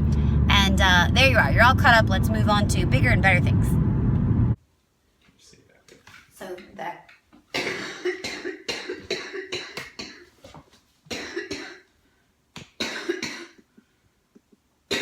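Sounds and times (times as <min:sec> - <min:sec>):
woman coughing: 0:07.5 - 0:10.3, 0:11.1 - 0:11.9, 0:12.8 - 0:13.6.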